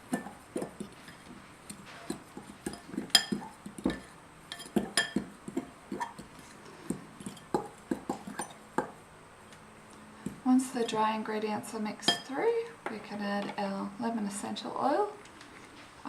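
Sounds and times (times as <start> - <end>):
spoon scraping mixing bowl: 0.0 - 9.0
spoon clinking on bowl: 2.1 - 6.2, 12.1 - 12.3.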